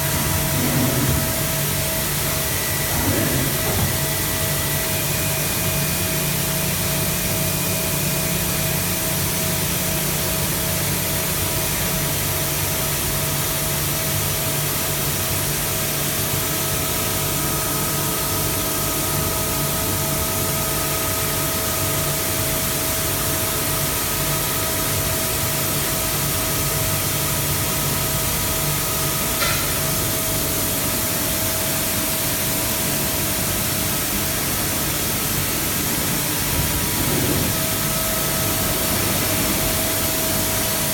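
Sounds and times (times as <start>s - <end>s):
machining center hiss and whine: 0.0s - 12.3s, 24.4s - 40.9s.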